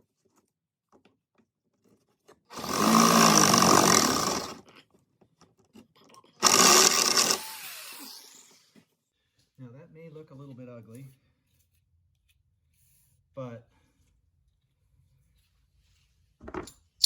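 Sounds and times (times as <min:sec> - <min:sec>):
reciprocating saw cutting metal: 0:02.5 - 0:04.6, 0:06.4 - 0:08.5.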